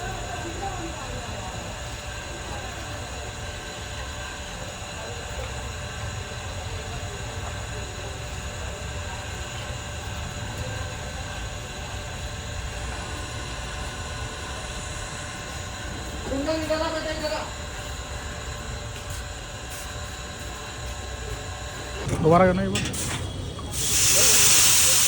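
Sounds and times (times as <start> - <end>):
faint indistinct voices: 0.0 - 25.0
low street rumble: 0.0 - 25.0.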